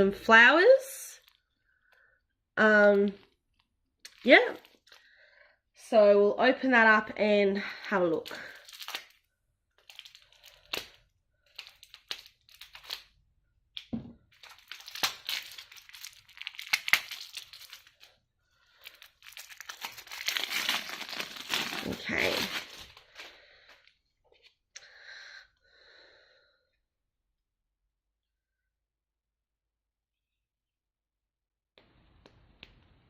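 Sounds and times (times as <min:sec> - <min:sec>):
plastic packaging crinkling: 0:01.2 - 0:01.5, 0:02.9 - 0:05.1, 0:08.2 - 0:13.2, 0:14.3 - 0:23.4.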